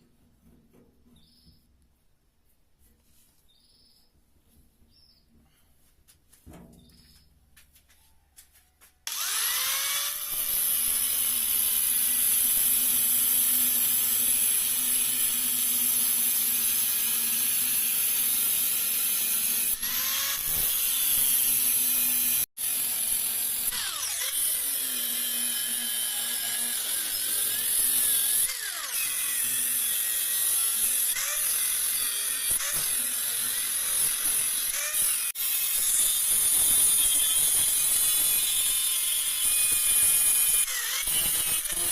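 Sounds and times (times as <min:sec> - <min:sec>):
electric power tool motor: 0:09.1 - 0:41.9.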